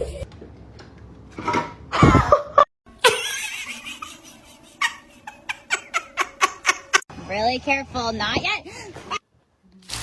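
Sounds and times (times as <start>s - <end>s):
person laughing: 2.0s - 7.0s.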